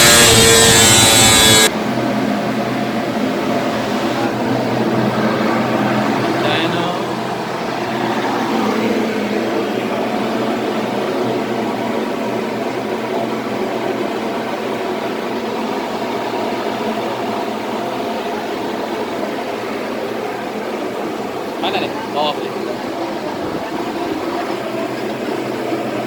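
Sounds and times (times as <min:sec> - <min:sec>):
machine running low hum: 0:00.0 - 0:19.8.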